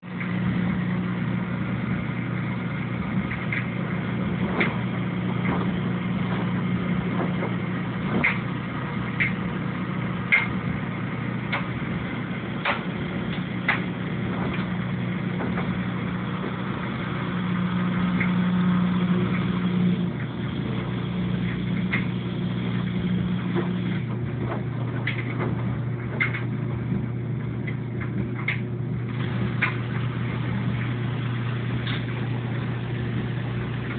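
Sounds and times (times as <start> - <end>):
washing machine motor hum: 0.0 - 33.9
clicks and knocks: 10.3 - 10.8, 12.6 - 16.6, 23.5 - 28.7.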